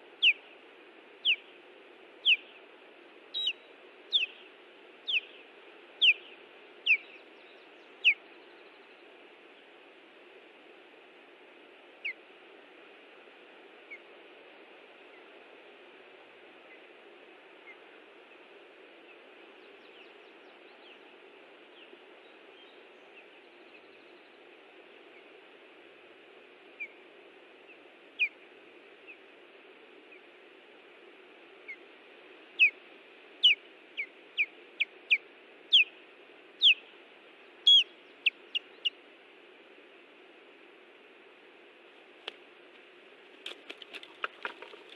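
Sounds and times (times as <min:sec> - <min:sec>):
steady background hiss: 0:00.0 - 0:44.9
osprey whistled alarm calls: 0:00.2 - 0:00.4, 0:01.2 - 0:01.5, 0:02.2 - 0:02.5, 0:03.4 - 0:04.4, 0:05.0 - 0:05.4, 0:06.0 - 0:07.2, 0:08.0 - 0:08.2, 0:28.2 - 0:28.4, 0:32.6 - 0:32.8, 0:33.4 - 0:35.9, 0:36.6 - 0:36.8, 0:37.6 - 0:39.0.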